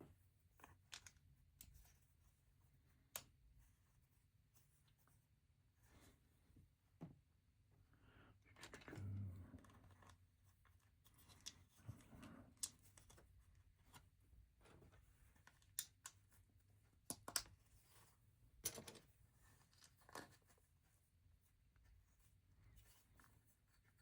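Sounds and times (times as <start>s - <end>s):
plastic bricks clicking together: 17.1s - 17.5s.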